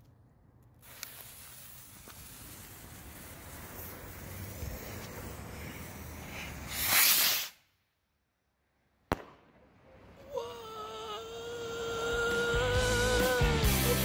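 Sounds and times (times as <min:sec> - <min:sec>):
firework fuse hissing: 0:00.7 - 0:07.8
rocket launching whoosh: 0:00.8 - 0:07.6.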